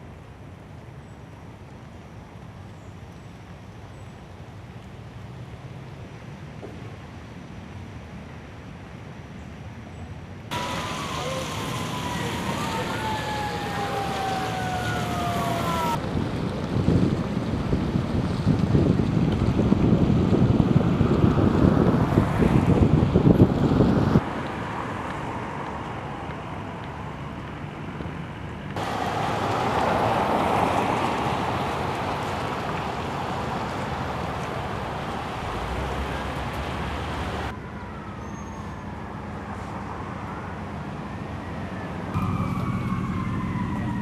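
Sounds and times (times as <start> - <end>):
low vehicle hum: 10.4 - 44.0
emergency sirens wailing: 10.5 - 16.4, 28.8 - 44.0
storm wind rushing: 10.5 - 24.2
wind gusting on microphone: 10.5 - 38.0.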